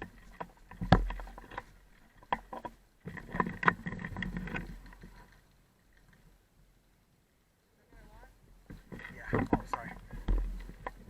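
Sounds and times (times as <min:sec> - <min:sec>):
gear clicks and knocks: 0:00.0 - 0:06.4, 0:08.7 - 0:11.0
rustling of gear: 0:00.0 - 0:06.4, 0:08.7 - 0:11.0.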